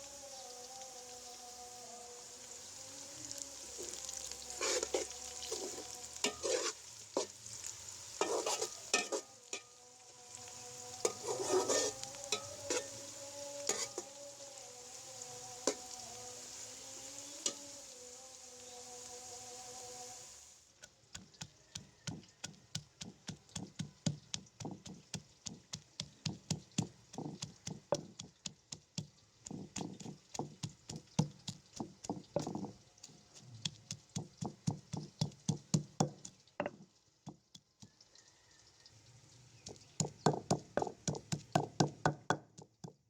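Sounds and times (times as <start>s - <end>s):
knife chopping on cutting board: 40.0s - 42.5s.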